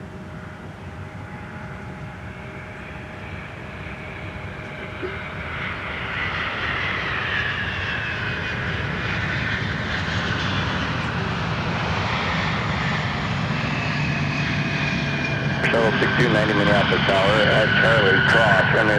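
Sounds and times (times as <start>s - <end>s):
jet engines rumbling and whining: 0.0s - 18.9s.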